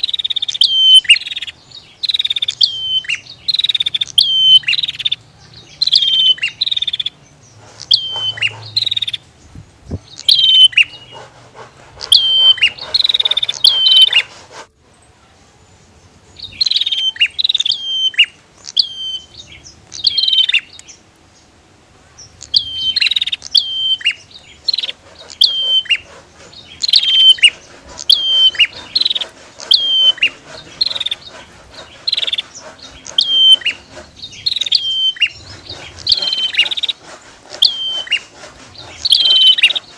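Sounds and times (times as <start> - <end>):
bird chirping: 0.0 - 39.9.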